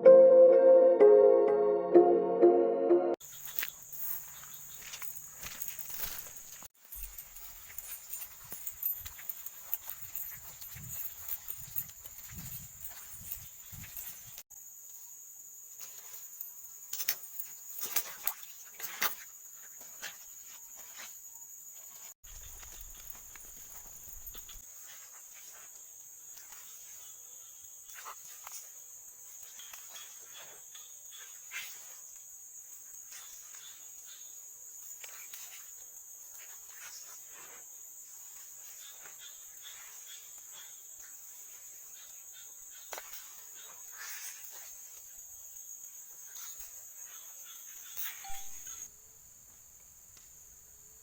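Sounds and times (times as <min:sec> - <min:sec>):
insects chirping: 0:03.2 - 0:51.0.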